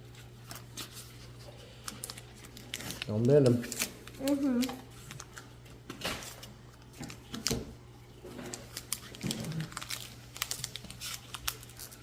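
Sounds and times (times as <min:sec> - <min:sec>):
foil wrappers crinkling: 0:00.0 - 0:12.0
cards clicking and rustling: 0:01.8 - 0:07.7, 0:08.5 - 0:12.0.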